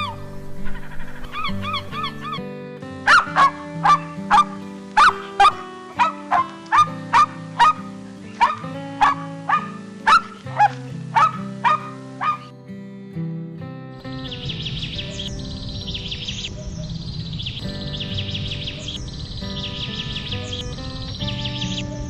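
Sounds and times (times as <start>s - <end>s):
background music: 0.0s - 22.0s
dog barking: 3.1s - 12.5s.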